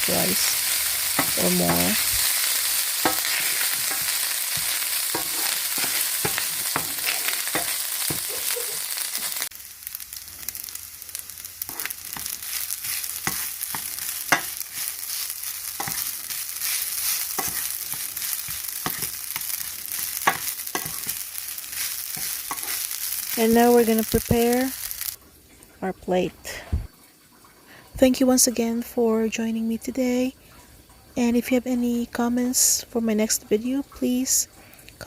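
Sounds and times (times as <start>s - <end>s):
rice sizzling in a pan: 0.0s - 25.2s
spatula scraping and tapping pan: 1.1s - 2.4s, 3.0s - 8.5s, 11.7s - 23.1s.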